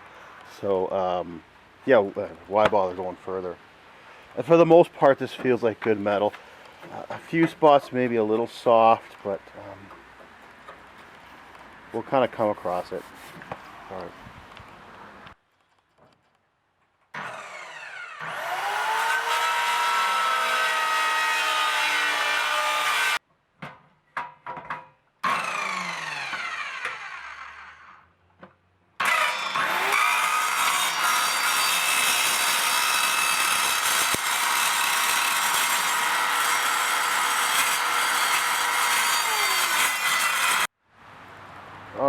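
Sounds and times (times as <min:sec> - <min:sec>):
power grinder whining: 0:17.2 - 0:23.2, 0:25.2 - 0:28.0, 0:29.0 - 0:40.7.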